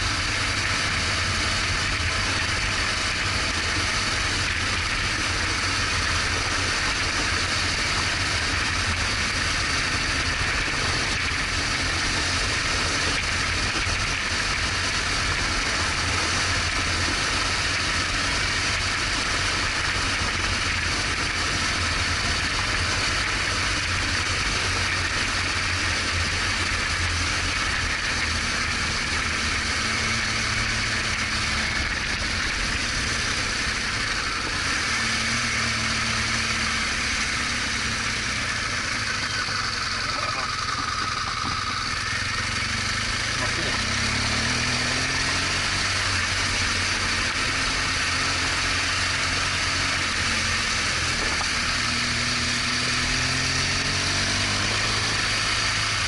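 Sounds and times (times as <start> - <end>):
motorcycle engine rumbling: 0.0 - 56.0.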